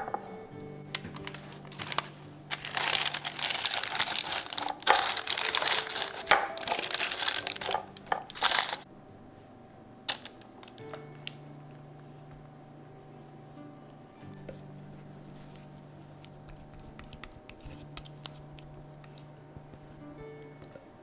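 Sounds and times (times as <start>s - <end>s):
parchment paper crinkling: 0.9s - 8.8s, 10.1s - 11.4s, 15.3s - 19.2s.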